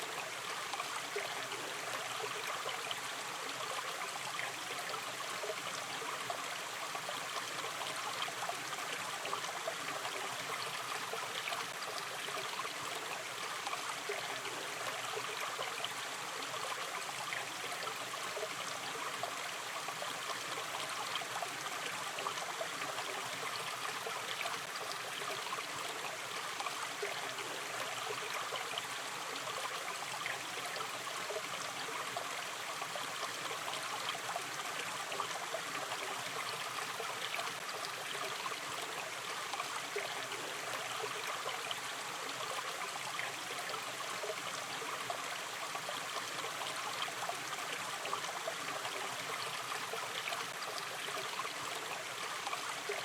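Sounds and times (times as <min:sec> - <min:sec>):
stream running over stones: 0:00.0 - 0:53.0.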